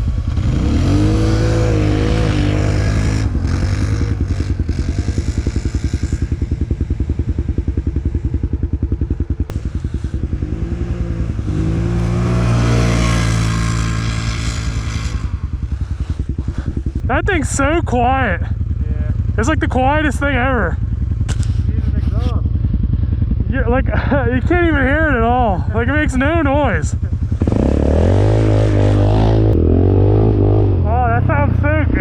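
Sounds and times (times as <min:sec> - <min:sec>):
atv engine revving: 0:00.0 - 0:32.0.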